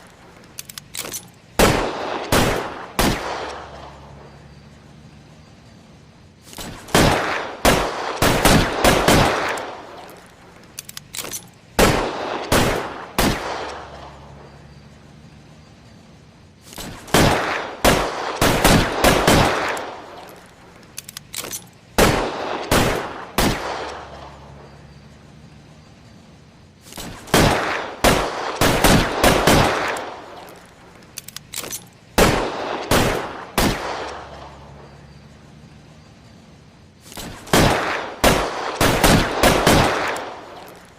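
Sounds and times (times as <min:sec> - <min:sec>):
light clicks: 0:00.0 - 0:01.4, 0:09.6 - 0:11.6, 0:20.2 - 0:21.8, 0:30.4 - 0:32.0
revolver gunshots with echo: 0:00.8 - 0:04.2, 0:06.6 - 0:10.3, 0:11.2 - 0:14.4, 0:16.8 - 0:20.5, 0:21.4 - 0:24.6, 0:27.0 - 0:30.7, 0:31.5 - 0:34.7, 0:37.1 - 0:40.9.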